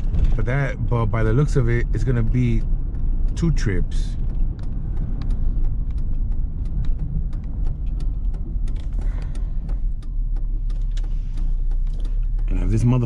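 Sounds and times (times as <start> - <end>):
light clicks and rattles: 0.0 - 13.0
truck engine rumble from cab: 0.0 - 13.0.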